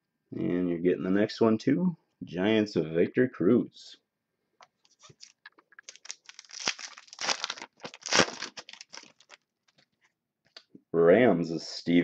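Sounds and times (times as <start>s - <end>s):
plastic crinkling and rustling: 4.8s - 10.1s.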